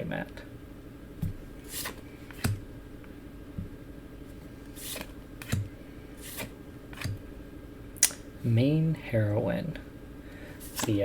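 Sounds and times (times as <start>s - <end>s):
faint steady hum: 0.0s - 11.0s
cards sliding and tapping: 1.2s - 2.6s, 4.3s - 7.3s, 10.6s - 11.0s.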